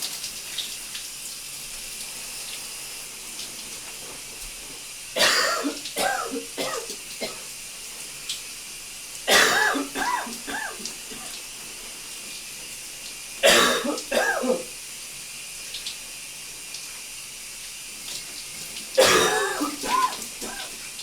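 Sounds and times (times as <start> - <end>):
shower water running: 0.0 - 21.0
man coughing: 5.2 - 7.4, 9.3 - 11.3, 13.4 - 14.7, 19.0 - 20.8.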